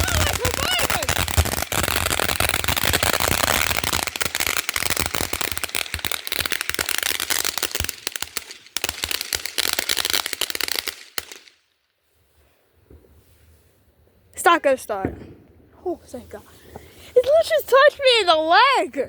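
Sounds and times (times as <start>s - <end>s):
firework crackling and popping: 0.0s - 11.7s.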